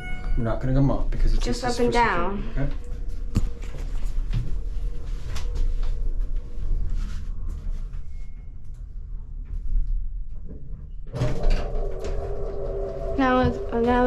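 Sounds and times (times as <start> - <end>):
elevator rumble: 0.0 - 14.0
elevator doors sliding open: 11.1 - 14.0.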